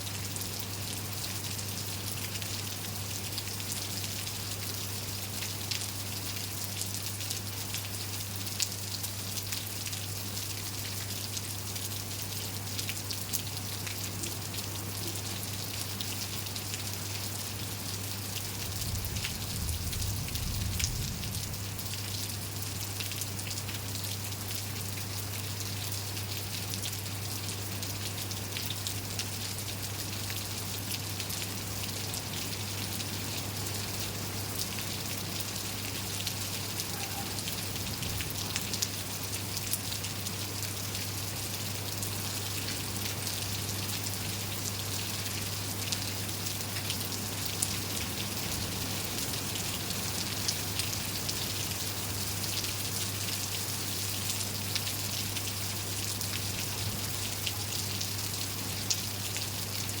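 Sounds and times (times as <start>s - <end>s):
rain hissing: 18.6s - 22.1s, 36.5s - 39.2s.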